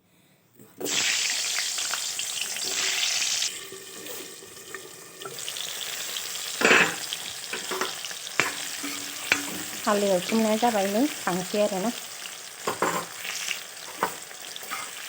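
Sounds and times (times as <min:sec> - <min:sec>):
potatoes sizzling in hot oil: 0:00.8 - 0:15.0
pan being stirred: 0:02.6 - 0:11.6, 0:12.6 - 0:15.0.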